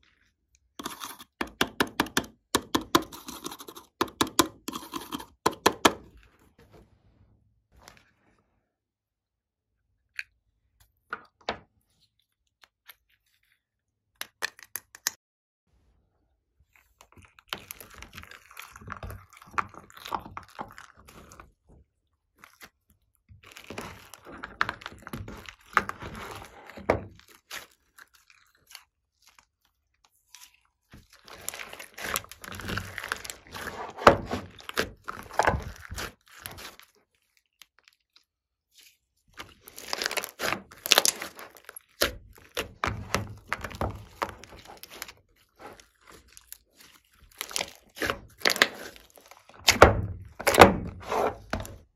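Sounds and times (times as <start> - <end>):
slime crackling and popping: 22.4 - 51.9.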